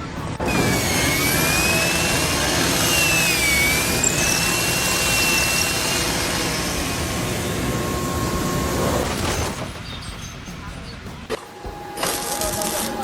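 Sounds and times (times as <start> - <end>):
loud machine engine noise: 0.0 - 13.0
wavering high whine: 0.0 - 13.0.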